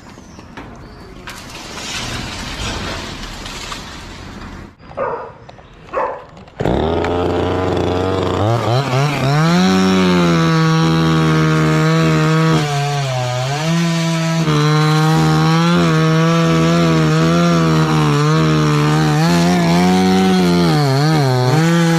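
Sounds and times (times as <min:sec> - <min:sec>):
chainsaw cutting wood: 0:06.3 - 0:21.9
chainsaw revving: 0:06.5 - 0:21.9.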